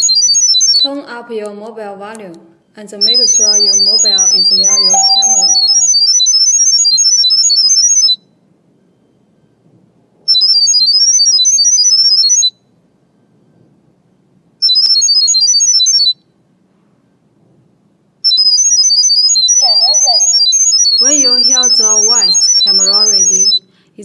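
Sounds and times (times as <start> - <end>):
rapid high-pitched beeping tones: 0.0 - 0.8, 3.0 - 8.3, 10.3 - 12.6, 18.2 - 23.6.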